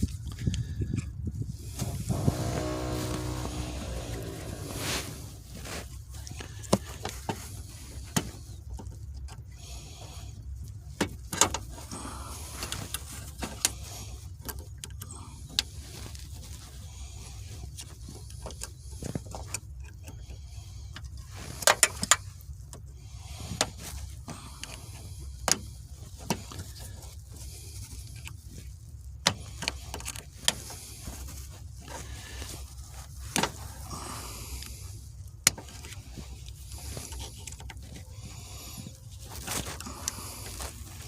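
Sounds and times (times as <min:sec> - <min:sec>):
steady low rumble: 0:01.3 - 0:05.7.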